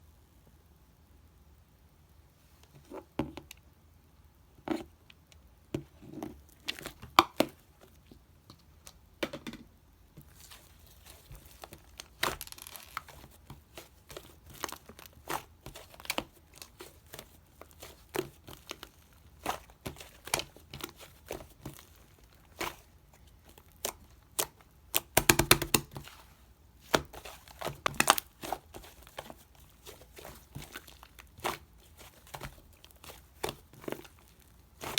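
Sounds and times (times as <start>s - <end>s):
slime squished by hand: 10.2s - 34.9s
sticky clicks and crackling pops: 23.5s - 26.1s, 26.9s - 34.9s.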